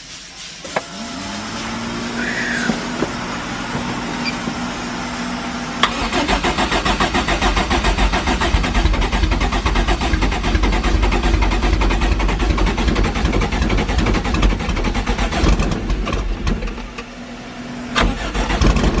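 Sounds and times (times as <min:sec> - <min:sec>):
engine running loud pulsing idle: 0:00.8 - 0:19.0
starter motor cranking: 0:05.8 - 0:17.0, 0:18.0 - 0:19.0.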